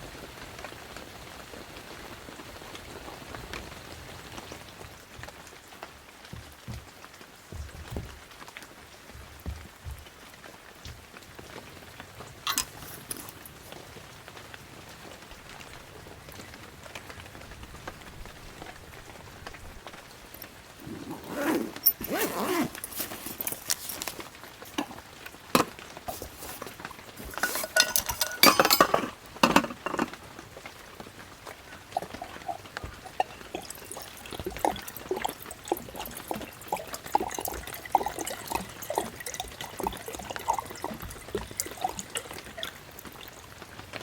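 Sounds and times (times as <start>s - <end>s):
rain on a tent: 0.0s - 28.2s, 29.1s - 44.0s
tableware clinking: 12.5s - 13.6s, 25.6s - 30.2s.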